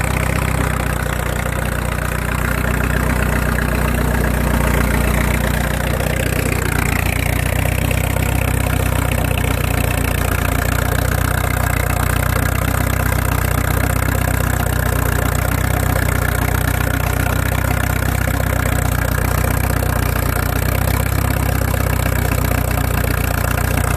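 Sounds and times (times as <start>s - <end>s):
tractor engine running: 0.0s - 23.9s.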